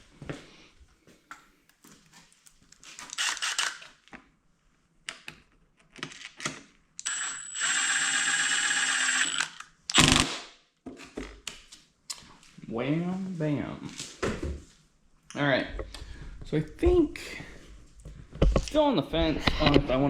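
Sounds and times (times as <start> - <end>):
cordless drill running: 3.1 - 3.8, 7.0 - 10.3.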